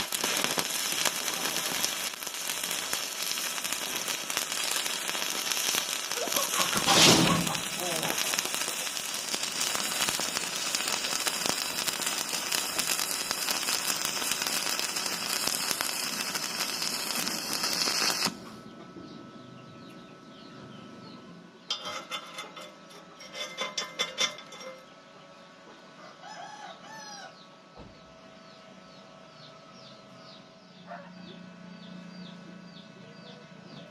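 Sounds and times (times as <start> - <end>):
welding arc crackling and hissing: 0.0 - 18.5
small birds calling: 1.2 - 10.1, 18.4 - 21.8, 26.8 - 33.9
chickens calling: 4.3 - 10.0.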